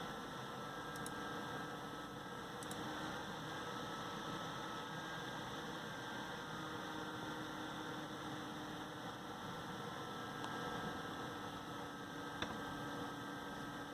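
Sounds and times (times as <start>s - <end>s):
small click: 0.9s - 1.2s, 2.6s - 2.8s.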